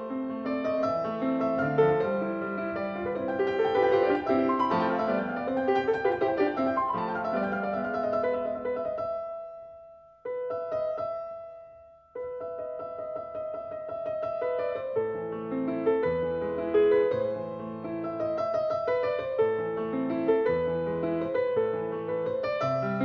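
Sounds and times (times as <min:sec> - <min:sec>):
piano music: 0:00.0 - 0:23.0.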